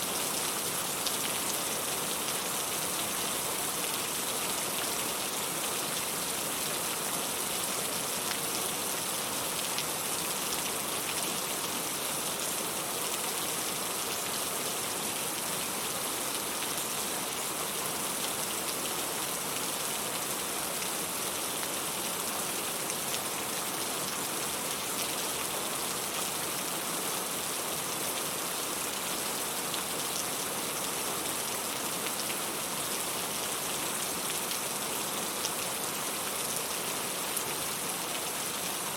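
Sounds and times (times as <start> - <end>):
steady rain hiss: 0.0 - 38.9.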